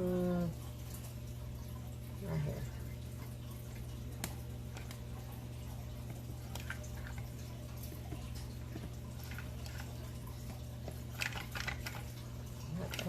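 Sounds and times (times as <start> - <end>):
low electrical hum: 0.0 - 13.0.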